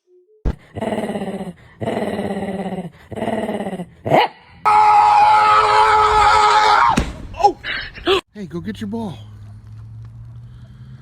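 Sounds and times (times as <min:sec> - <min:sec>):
dog growling: 0:00.7 - 0:04.2.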